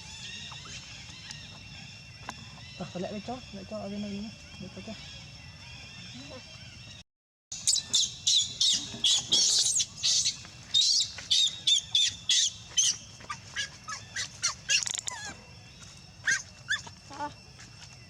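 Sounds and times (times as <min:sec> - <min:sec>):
monkey screaming: 0:13.5 - 0:15.4, 0:16.2 - 0:16.8.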